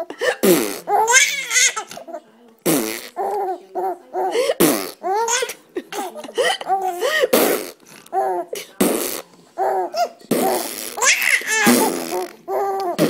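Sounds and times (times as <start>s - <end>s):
fart noises: 0.4s - 1.0s, 2.6s - 3.2s, 4.6s - 5.0s, 7.3s - 7.8s, 8.8s - 9.3s, 10.3s - 13.0s
baby laughing: 0.8s - 2.2s, 5.0s - 7.1s, 9.6s - 13.0s.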